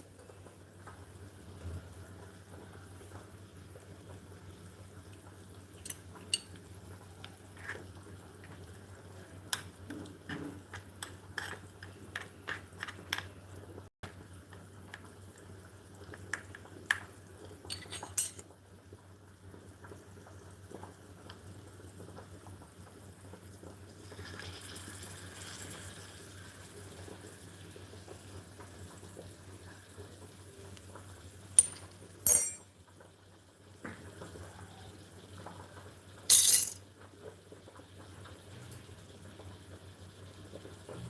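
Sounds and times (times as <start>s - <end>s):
small pots clinking: 16.1s - 18.4s, 31.6s - 32.7s, 36.3s - 36.8s.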